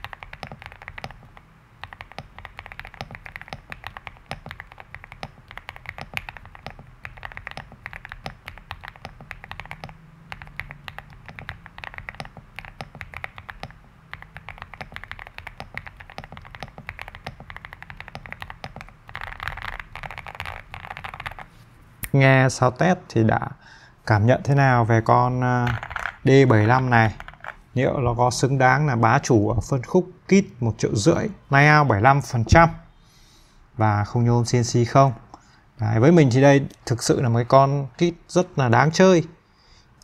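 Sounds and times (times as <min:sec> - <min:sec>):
fast typing on mechanical keyboard: 0:00.0 - 0:21.5, 0:25.6 - 0:27.6.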